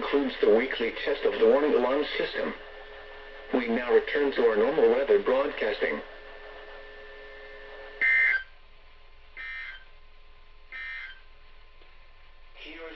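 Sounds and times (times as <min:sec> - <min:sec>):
faint radio hum: 0:00.0 - 0:12.9
warbling two-tone data bursts: 0:08.0 - 0:08.5.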